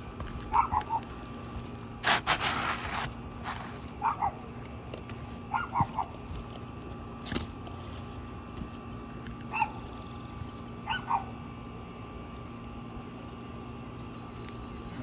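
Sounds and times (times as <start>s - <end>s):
dog barking: 0.5s - 1.0s, 4.0s - 4.4s, 5.5s - 6.1s, 9.5s - 9.8s, 10.8s - 11.3s.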